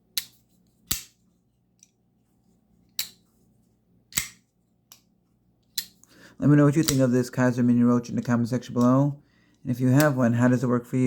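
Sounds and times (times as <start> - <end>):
knife blade snapping open: 4.1 - 4.4.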